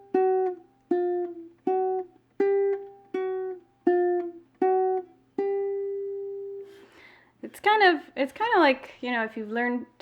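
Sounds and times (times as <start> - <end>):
ukulele notes plucked: 0.0 - 6.8.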